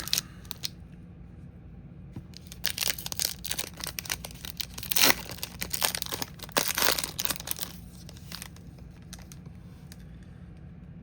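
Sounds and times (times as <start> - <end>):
foil wrapper tearing and crinkling: 0.0 - 0.7, 2.4 - 9.4.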